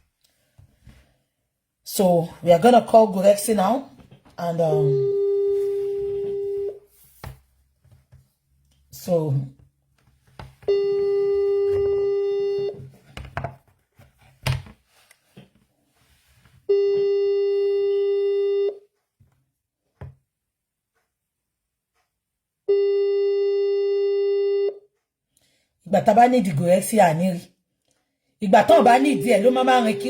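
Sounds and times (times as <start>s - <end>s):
telephone ringback tone: 4.7s - 6.8s, 10.7s - 12.8s, 16.7s - 18.8s, 22.7s - 24.8s, 28.6s - 30.0s.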